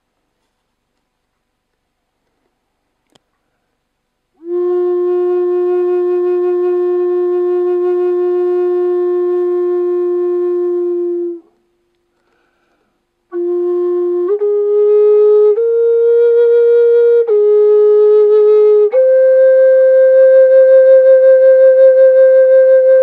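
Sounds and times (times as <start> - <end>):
flute holding a long note: 4.4 - 11.8, 13.3 - 23.0.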